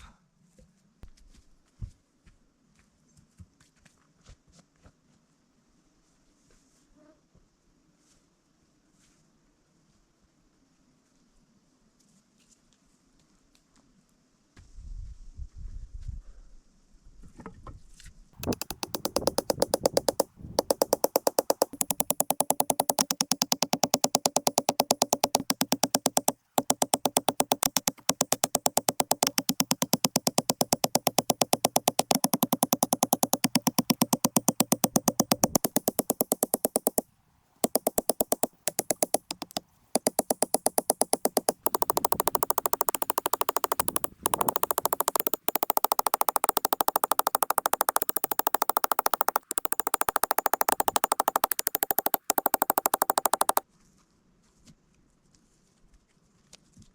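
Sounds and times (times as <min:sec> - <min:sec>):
electronic music: 0:18.4 - 0:37.0, 0:37.6 - 0:53.6.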